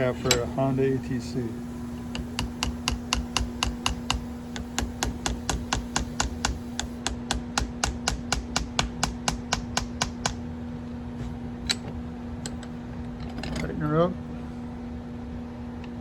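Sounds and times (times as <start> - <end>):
steady low hum: 0.0 - 7.1
rapid mechanical clicking: 0.0 - 7.2.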